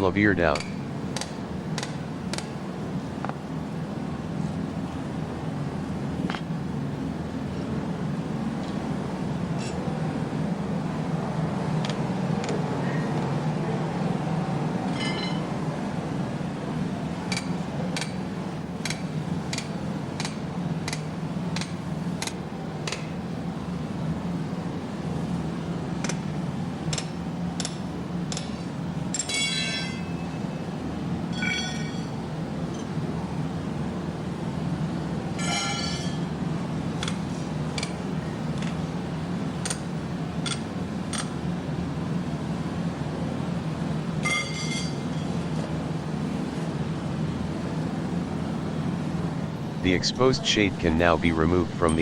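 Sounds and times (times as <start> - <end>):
steady low hum: 0.0 - 52.0
hammer striking steel: 29.2 - 30.1, 35.4 - 36.2, 44.3 - 45.1.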